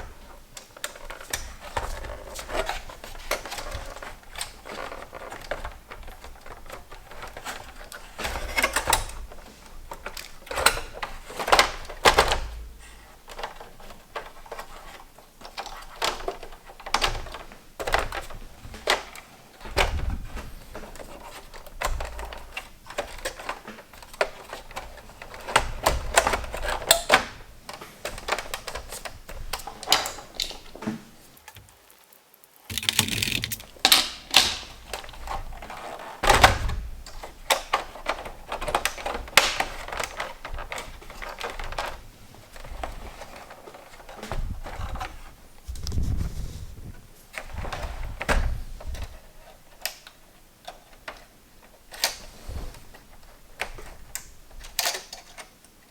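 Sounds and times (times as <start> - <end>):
clicks of plastic and metal parts: 32.7 - 35.1.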